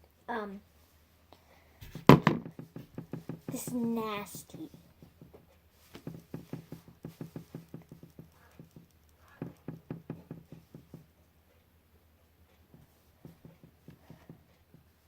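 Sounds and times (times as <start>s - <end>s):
light taps: 1.8s - 3.9s, 4.6s - 11.2s, 12.5s - 15.0s.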